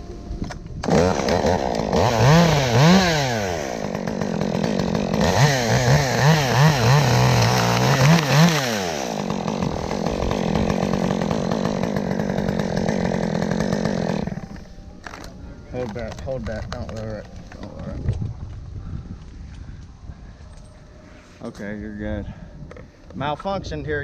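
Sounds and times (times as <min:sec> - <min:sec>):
chainsaw revving: 0:00.8 - 0:15.2.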